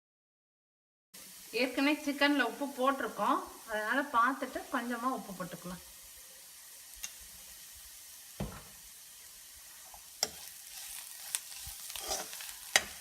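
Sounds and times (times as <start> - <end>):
onions frying in oil: 1.2 - 13.0
spoon knocking against pan: 8.4 - 8.8.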